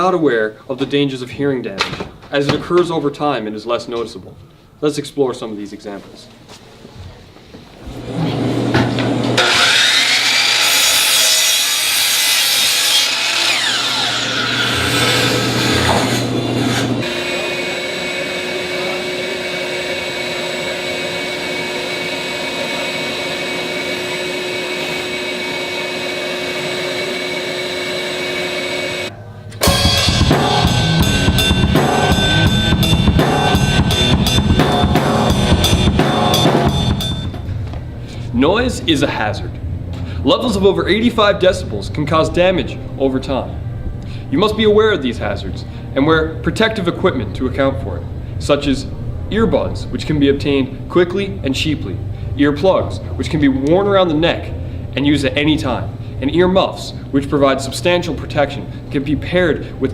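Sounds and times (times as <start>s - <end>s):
steady drone with held tones: 17.0s - 38.1s
rapid drum strokes: 29.6s - 37.5s.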